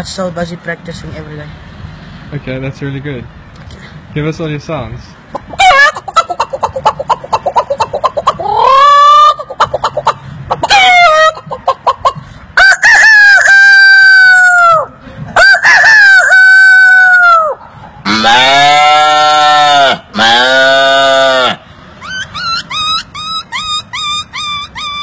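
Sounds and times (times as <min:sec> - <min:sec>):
man imitating chicken clucks: 0:05.3 - 0:25.0
imitated rooster crows: 0:12.6 - 0:21.6
low animal call: 0:17.4 - 0:25.0.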